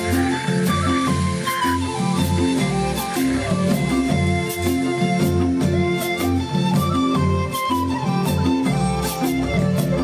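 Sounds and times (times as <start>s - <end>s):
background music with steady beat: 0.0s - 10.0s.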